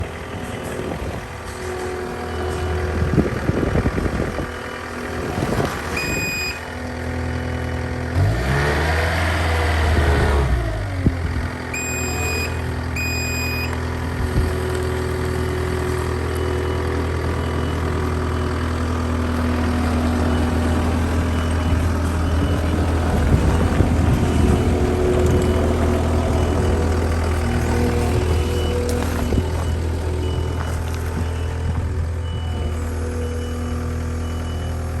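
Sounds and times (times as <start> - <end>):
loader diesel engine running: 0.0 - 35.0
short electronic beeps: 6.0 - 6.7, 11.7 - 13.8, 27.8 - 34.8
faint regular beeping: 11.8 - 13.8.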